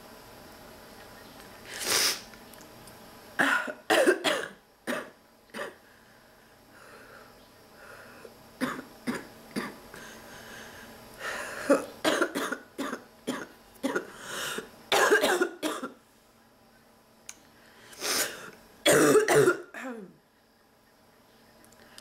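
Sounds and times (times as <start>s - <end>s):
woman coughing: 3.4s - 5.8s, 8.6s - 9.8s, 11.6s - 14.1s, 14.9s - 16.0s, 18.8s - 20.2s.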